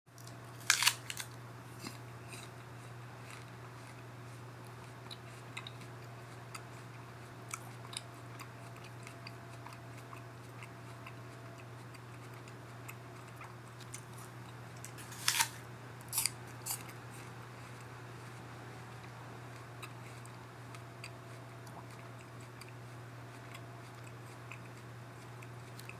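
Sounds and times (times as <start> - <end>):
steady low hum: 0.1 - 25.9
apple crunches: 0.2 - 4.0, 13.4 - 17.0
wet chewing clicks: 19.5 - 25.9.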